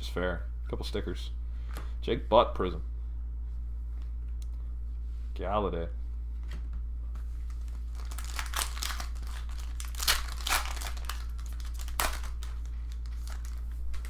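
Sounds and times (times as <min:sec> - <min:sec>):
low electrical hum: 0:00.0 - 0:14.0
foil wrapper crinkling and tearing: 0:07.5 - 0:14.0.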